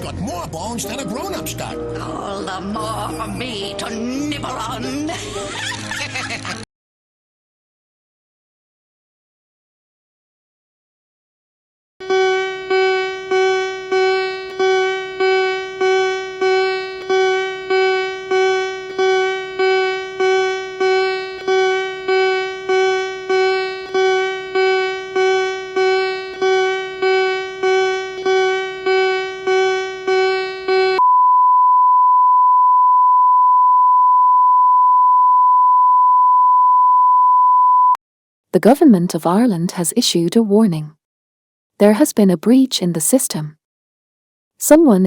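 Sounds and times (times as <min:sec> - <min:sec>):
pulsed electronic alarm tone: 0:12.0 - 0:38.0
steady high-pitched beep: 0:24.0 - 0:38.0.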